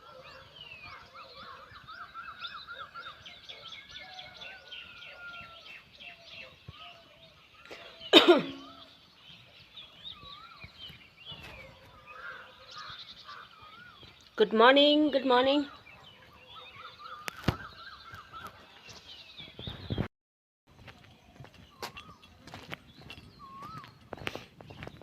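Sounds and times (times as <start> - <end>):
birds singing and chirping: 0.0 - 20.1, 20.8 - 25.0
loud bird call sweeping down: 16.8 - 18.6.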